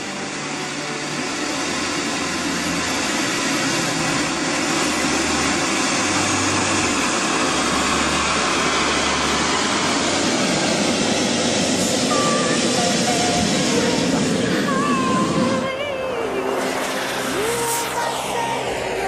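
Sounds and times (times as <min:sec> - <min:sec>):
model jet turbine engines: 0:00.0 - 0:19.0.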